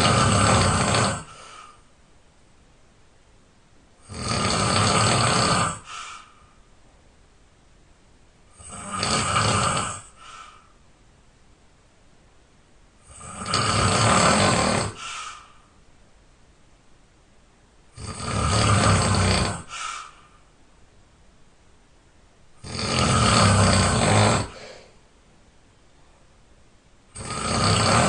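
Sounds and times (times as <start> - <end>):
person snoring loudly: 0.0 - 1.7, 4.0 - 6.3, 8.5 - 10.4, 13.0 - 15.5, 18.0 - 20.1, 22.6 - 24.9, 27.1 - 28.0.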